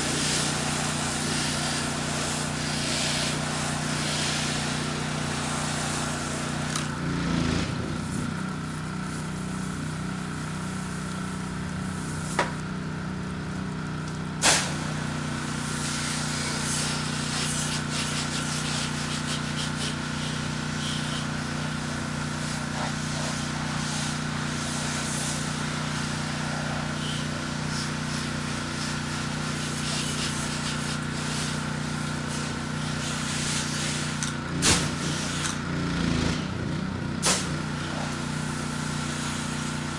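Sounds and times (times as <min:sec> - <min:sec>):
water spraying hiss: 0:00.0 - 0:06.9, 0:14.4 - 0:35.6, 0:37.2 - 0:39.9
pressure washer engine running: 0:00.0 - 0:39.9.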